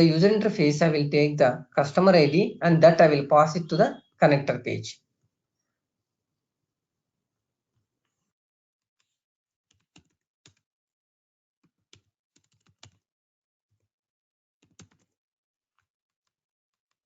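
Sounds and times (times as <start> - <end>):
keyboard typing: 12.4 - 13.0, 14.6 - 15.0.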